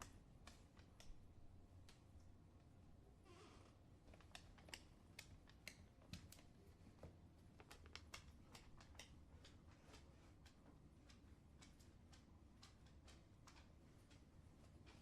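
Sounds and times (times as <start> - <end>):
dog claws clicking on wooden floor: 0.0 - 2.3, 4.0 - 15.0.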